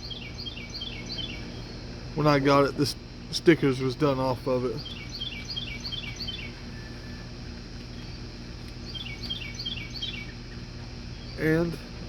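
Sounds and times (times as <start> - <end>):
steady low hum: 0.0 - 12.0
songbird falling chirps: 4.8 - 10.6.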